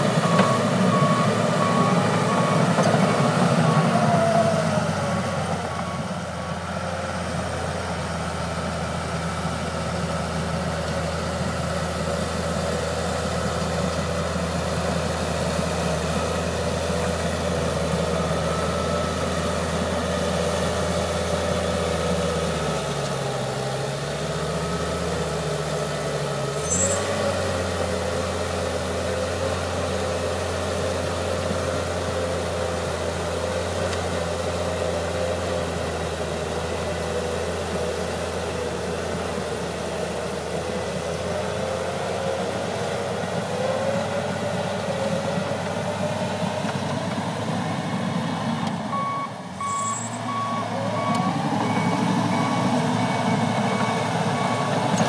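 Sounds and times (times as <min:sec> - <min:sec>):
bulldozer diesel engine running: 0:00.0 - 0:55.0
backup alarm beeping: 0:49.0 - 0:55.0.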